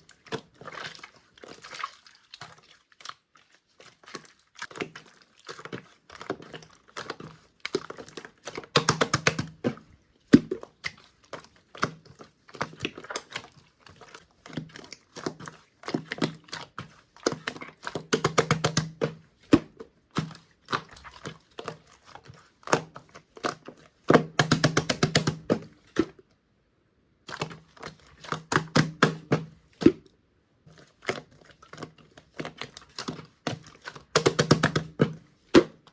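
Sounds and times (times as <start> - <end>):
slime squished by hand: 27.2 - 30.1.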